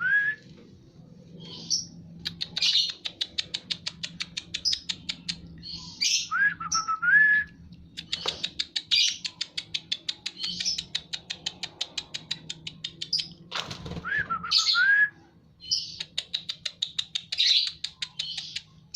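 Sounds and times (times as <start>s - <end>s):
bird sharp ticking calls: 1.5s - 6.4s, 7.9s - 13.4s, 15.6s - 18.9s.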